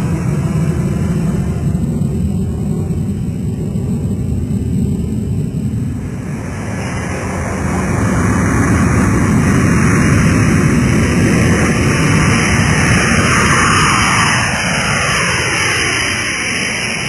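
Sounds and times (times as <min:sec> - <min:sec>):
jet airplane taking off: 0:00.0 - 0:17.0.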